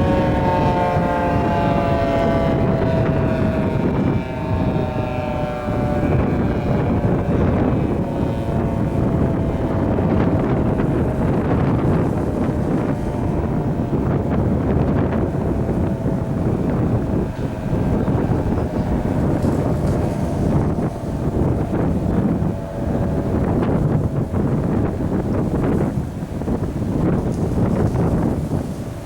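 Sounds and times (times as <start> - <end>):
tornado siren winding down: 0.0 - 29.0
wind buffeting microphone: 0.0 - 29.0.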